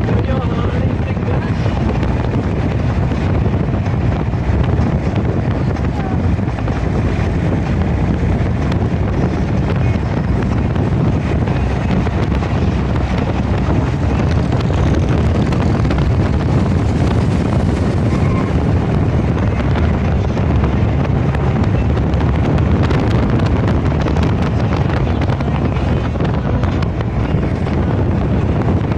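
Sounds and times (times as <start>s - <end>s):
moving vehicle rumble: 0.0s - 28.9s
wind buffeting microphone: 0.0s - 28.9s.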